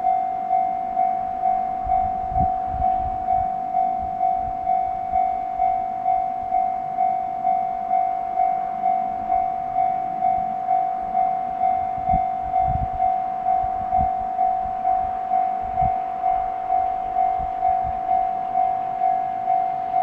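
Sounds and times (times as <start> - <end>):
level-crossing warning bell: 0.0 - 20.0.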